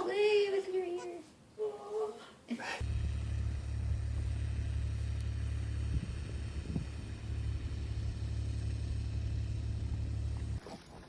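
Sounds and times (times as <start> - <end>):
steady low rumble: 2.8 - 10.6.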